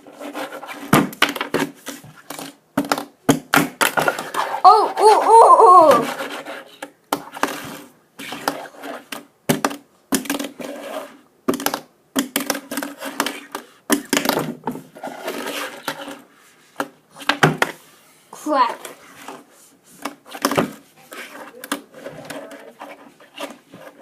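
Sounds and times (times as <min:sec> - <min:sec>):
fingerboard clacking and scraping: 0:05.9 - 0:17.8.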